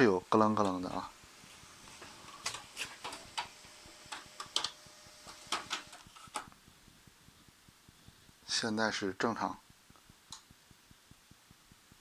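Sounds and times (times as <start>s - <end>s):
faint printer motor tone: 1.0s - 6.5s
laser printer clicking and knocking: 2.5s - 6.5s.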